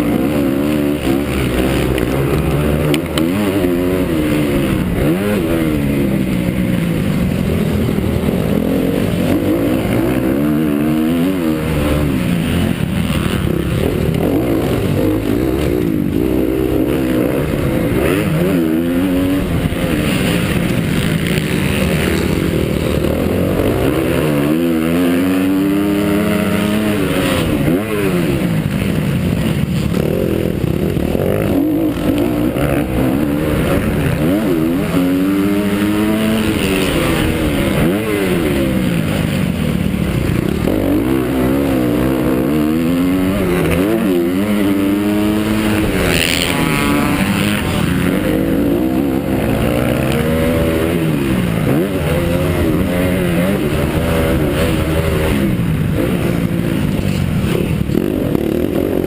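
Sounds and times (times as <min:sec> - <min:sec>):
motocross bike engine revving: 0:00.0 - 0:59.0.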